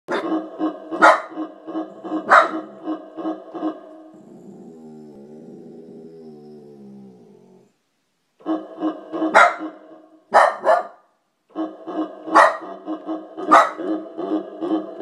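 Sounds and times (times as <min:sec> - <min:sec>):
dog barking: 0:01.0 - 0:01.4, 0:02.2 - 0:02.7, 0:09.3 - 0:11.1, 0:12.3 - 0:12.8, 0:13.4 - 0:14.0.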